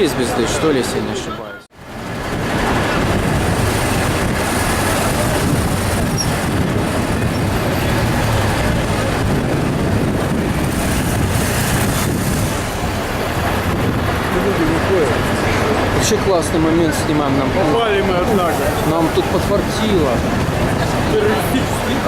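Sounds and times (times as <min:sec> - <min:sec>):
traffic rumble: 0:00.0 - 0:22.0.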